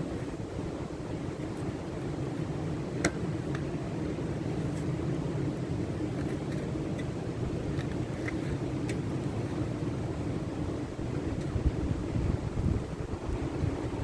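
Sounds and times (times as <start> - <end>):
water rushing: 0.0 - 14.0
campfire crackling and popping: 0.7 - 14.0
wind rushing: 10.0 - 14.0.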